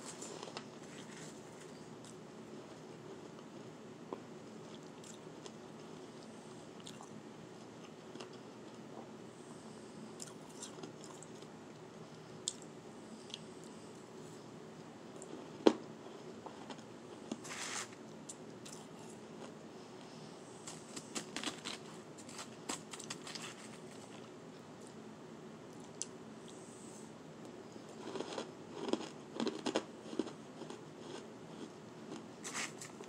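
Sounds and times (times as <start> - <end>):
chewing shaved ice crunches: 20.6 - 24.3, 27.9 - 33.0.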